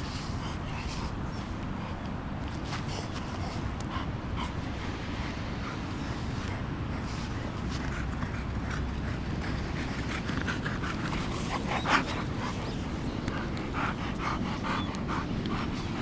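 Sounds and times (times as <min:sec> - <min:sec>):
steady low rumble: 0:00.0 - 0:16.0
dog panting: 0:05.6 - 0:16.0.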